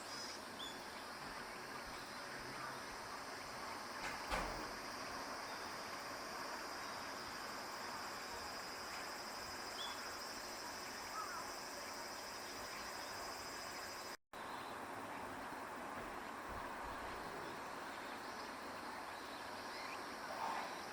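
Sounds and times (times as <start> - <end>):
insect chorus droning: 0.0 - 20.9
faint bird chirps: 9.7 - 10.2, 11.1 - 14.8.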